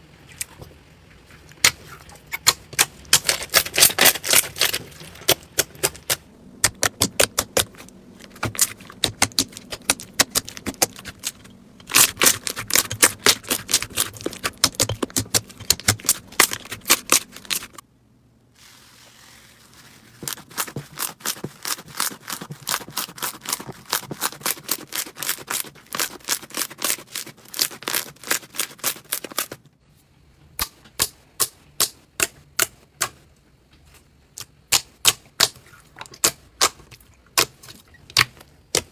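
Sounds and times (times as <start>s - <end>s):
slime crackling and popping: 1.6s - 17.8s, 20.1s - 29.6s.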